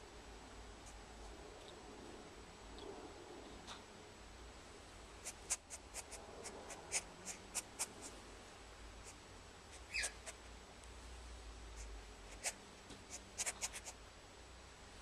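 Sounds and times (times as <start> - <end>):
chicks scratching and clicking: 5.2 - 8.2, 12.3 - 14.0.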